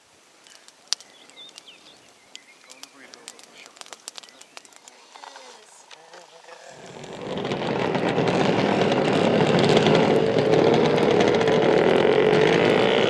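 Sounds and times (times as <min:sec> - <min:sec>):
rc car engine at high revs: 0:06.4 - 0:13.0.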